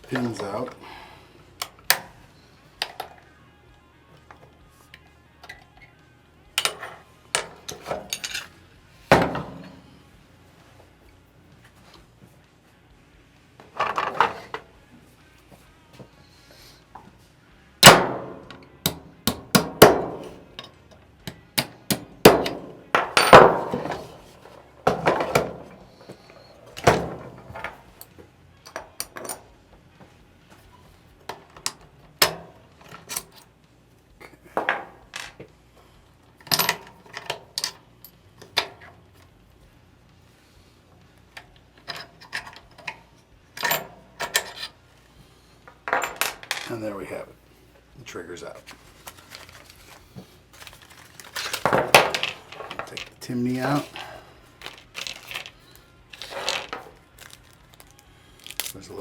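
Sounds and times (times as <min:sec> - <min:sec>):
metallic clinks and clangs: 0:06.6 - 0:10.0, 0:19.8 - 0:29.5, 0:36.4 - 0:38.9, 0:43.6 - 0:44.8, 0:45.7 - 0:46.8.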